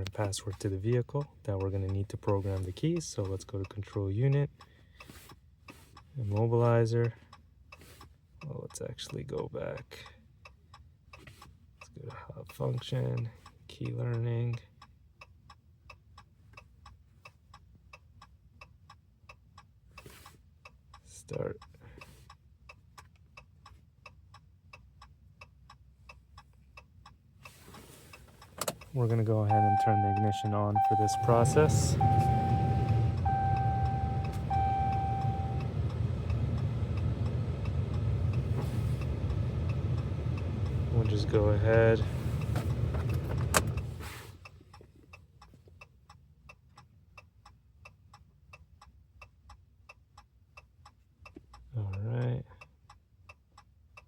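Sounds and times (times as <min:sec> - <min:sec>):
hazard light flasher ticking: 0:28.4 - 0:41.2.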